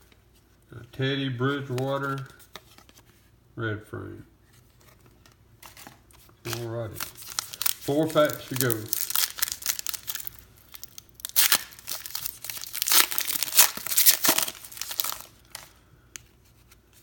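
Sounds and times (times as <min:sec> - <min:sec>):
wrapper tearing and crinkling: 0:06.5 - 0:15.8.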